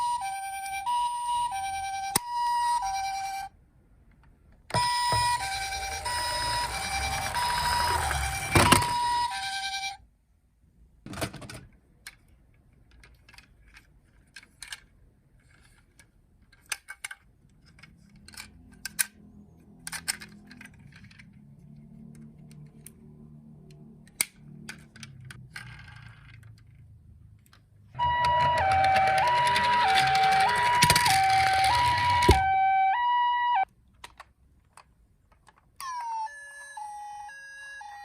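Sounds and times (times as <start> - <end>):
toy electronic hi-lo siren: 0.0 - 3.5, 4.7 - 10.0, 28.0 - 33.7, 35.8 - 38.0
plastic toy and packaging handled: 11.0 - 32.7, 33.6 - 38.0.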